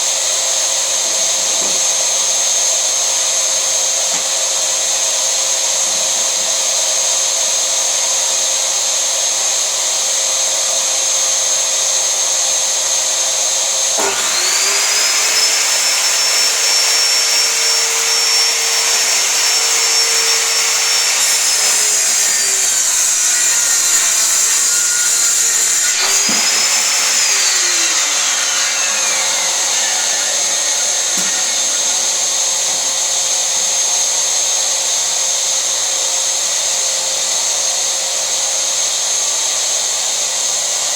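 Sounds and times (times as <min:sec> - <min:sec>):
steady whirring motor noise: 0:00.0 - 0:40.9
circular saw motor whining: 0:00.1 - 0:40.4.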